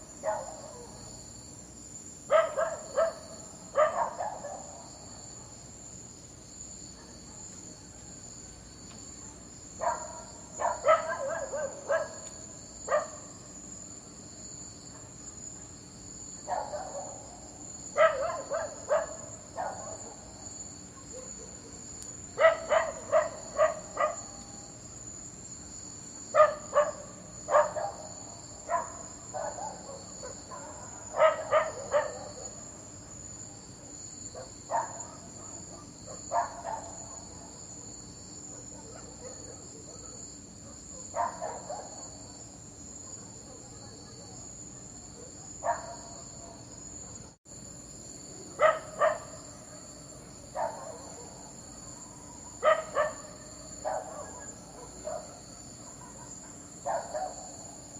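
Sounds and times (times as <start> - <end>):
crickets chirring: 0.0 - 57.9
dog barking: 0.2 - 1.0, 2.3 - 5.6, 6.9 - 7.6, 9.8 - 12.3, 12.9 - 13.3, 14.9 - 15.8, 16.4 - 20.3, 20.9 - 21.8, 22.4 - 24.6, 26.3 - 32.7, 34.4 - 47.4, 48.5 - 57.7.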